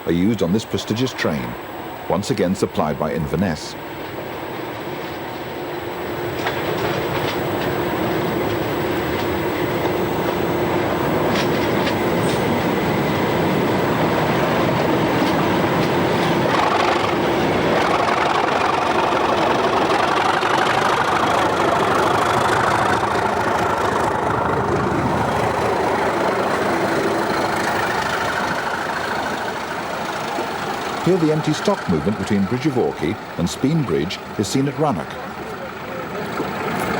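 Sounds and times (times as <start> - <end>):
passenger train passing: 0.0 - 36.9
wheels clattering over rail joints: 3.4 - 36.9.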